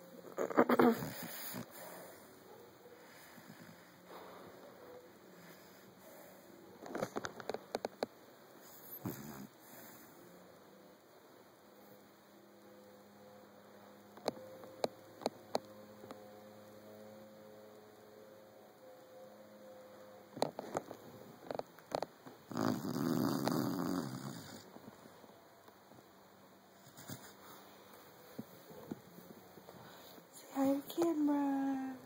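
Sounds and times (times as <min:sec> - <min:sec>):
faint steady hum: 0:00.0 - 0:32.0
puppy rasping snore: 0:00.2 - 0:02.3, 0:08.6 - 0:10.2, 0:21.5 - 0:24.7.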